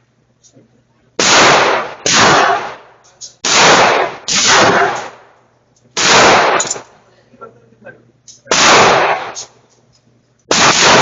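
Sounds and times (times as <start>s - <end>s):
loud gunshots: 1.2s - 5.3s, 6.0s - 6.9s, 8.5s - 9.5s, 10.5s - 11.0s.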